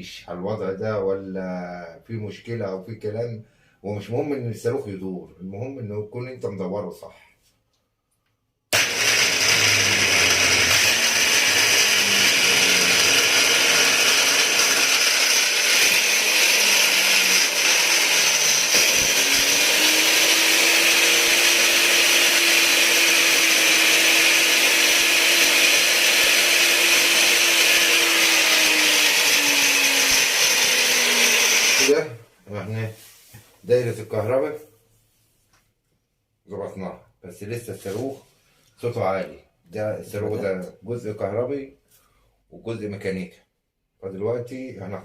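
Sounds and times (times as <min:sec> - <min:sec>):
angle grinder running: 0:08.8 - 0:32.0.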